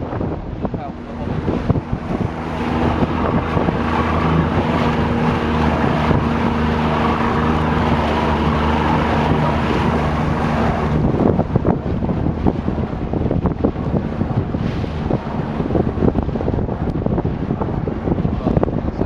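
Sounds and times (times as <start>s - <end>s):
speedboat engine running: 0.0s - 19.0s
water noise: 0.0s - 19.0s
wind buffeting microphone: 0.0s - 19.0s.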